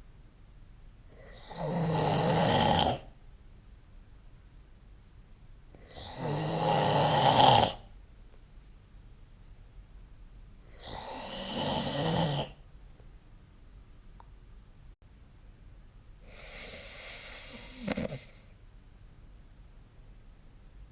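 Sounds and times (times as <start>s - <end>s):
person snoring: 1.2s - 3.1s, 5.8s - 7.9s, 10.7s - 12.6s, 16.2s - 18.5s.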